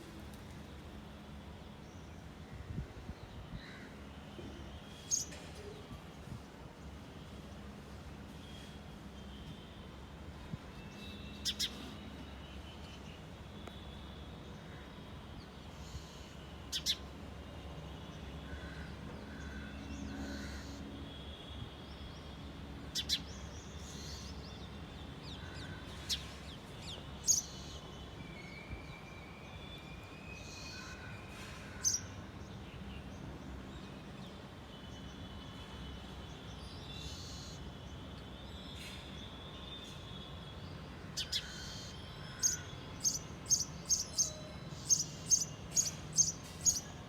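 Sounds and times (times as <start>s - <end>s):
sparrows chirping: 10.9s - 12.0s, 15.6s - 17.1s, 22.9s - 28.2s, 39.8s - 47.0s.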